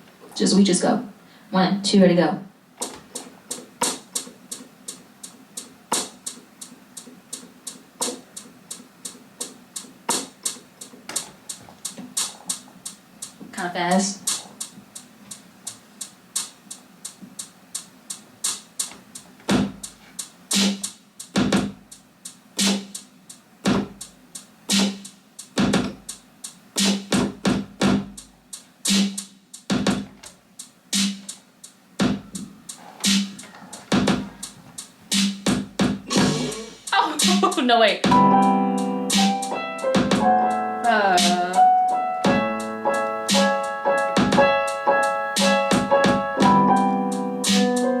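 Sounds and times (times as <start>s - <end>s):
snare drum: 2.8s - 5.0s, 5.6s - 8.8s, 9.4s - 13.4s, 17.4s - 21.9s, 22.6s - 23.0s, 23.6s - 24.1s, 24.7s - 26.2s, 26.8s - 28.3s, 28.9s - 30.3s, 31.0s - 31.4s, 32.0s - 38.3s, 39.1s - 40.3s, 41.2s - 41.6s, 43.3s - 44.6s, 45.4s - 46.6s, 47.4s - 47.9s
hi-hat ticks: 2.8s - 36.2s, 39.1s - 46.5s, 47.1s - 47.9s
deep kick drum: 23.7s - 24.0s, 27.2s - 28.2s, 44.2s - 44.5s
electric piano chords: 38.1s - 48.0s.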